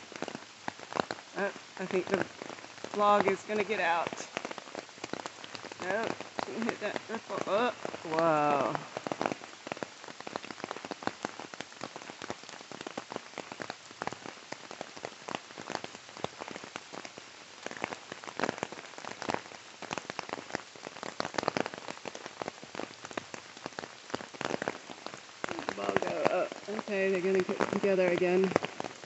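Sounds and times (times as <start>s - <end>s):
river rushing over rapids: 25.5s - 28.5s.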